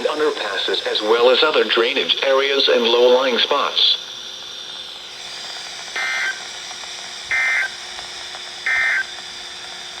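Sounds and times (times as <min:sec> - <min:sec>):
radio hiss and hum: 0:00.0 - 0:04.0
warbling digital data bursts: 0:07.3 - 0:07.7, 0:08.7 - 0:09.0.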